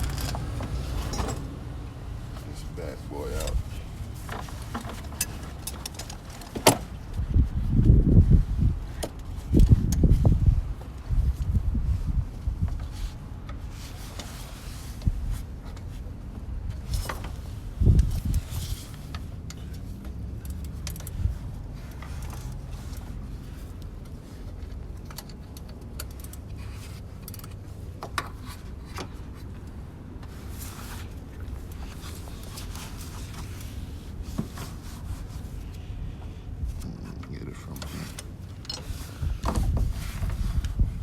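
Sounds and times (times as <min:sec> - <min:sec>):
metal tools clinking and scraping: 0:00.0 - 0:01.5, 0:02.4 - 0:06.6
steady low rumble: 0:00.0 - 0:41.0.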